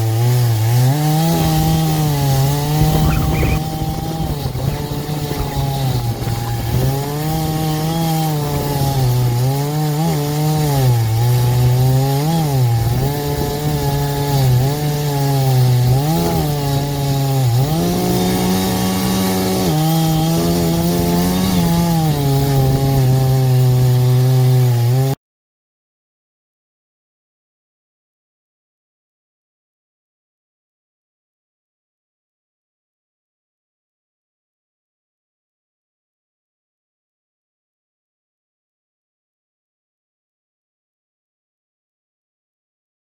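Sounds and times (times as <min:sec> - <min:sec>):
chainsaw ripping through log: 0:00.0 - 0:25.2.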